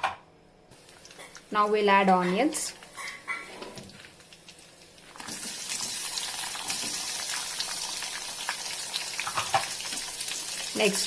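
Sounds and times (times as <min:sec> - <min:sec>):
small crackles of frying: 0:00.8 - 0:11.0
onions sizzling in hot oil: 0:03.9 - 0:11.0.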